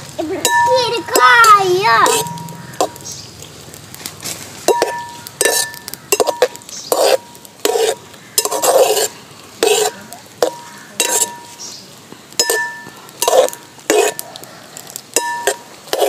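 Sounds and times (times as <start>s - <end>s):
metal spoon clinking in pot: 0.4s - 3.0s, 4.7s - 11.6s, 12.4s - 14.2s, 15.2s - 16.0s.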